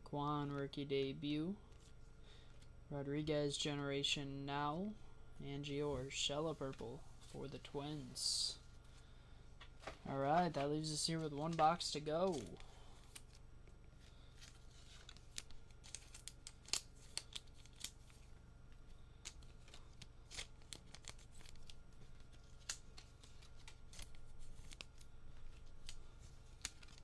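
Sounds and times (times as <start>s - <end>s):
trading cards being shuffled: 9.7s - 13.4s, 14.0s - 27.0s.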